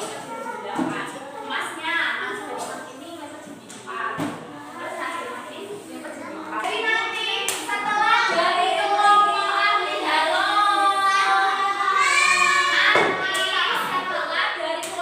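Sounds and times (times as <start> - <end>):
children singing: 7.8 - 13.8.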